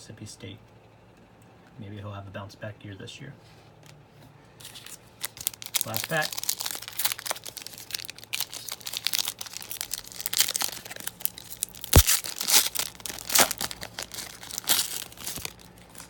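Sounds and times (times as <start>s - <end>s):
wrapper tearing and crinkling: 4.6s - 16.0s.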